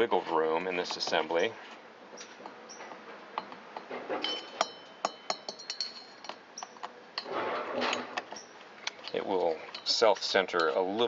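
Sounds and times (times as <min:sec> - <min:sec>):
small metal clinks: 0:03.4 - 0:07.3, 0:07.9 - 0:11.0.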